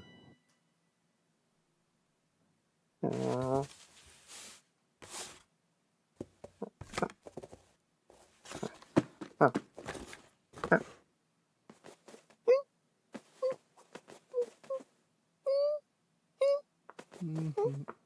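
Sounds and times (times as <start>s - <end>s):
rustling scuffs: 3.1s - 5.5s, 6.2s - 11.0s, 13.2s - 14.9s.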